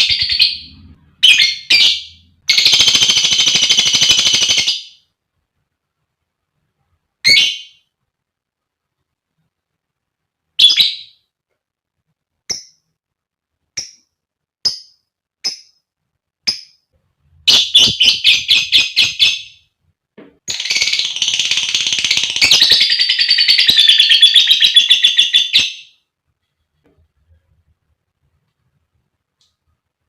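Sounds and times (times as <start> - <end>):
lovebird shrill chirps: 7.2 - 7.9, 10.6 - 11.2, 17.5 - 19.6, 20.5 - 26.0
lovebird chattering trill: 17.5 - 19.6.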